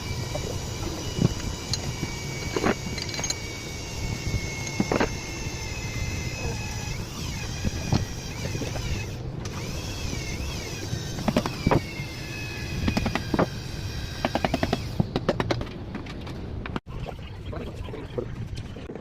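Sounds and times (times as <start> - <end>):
wavering high-pitched whine: 0.0 - 15.1.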